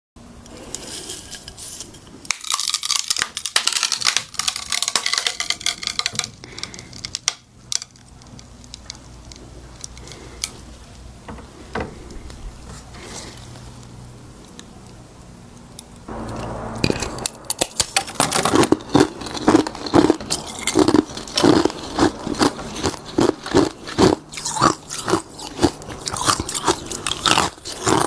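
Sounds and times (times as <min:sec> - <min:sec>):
ice cracking: 0:02.3 - 0:07.3.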